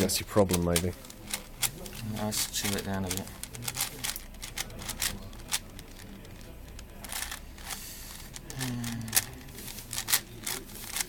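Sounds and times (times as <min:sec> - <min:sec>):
puzzle cube layers clicking: 0:00.3 - 0:11.0
low voice murmur: 0:08.3 - 0:10.8.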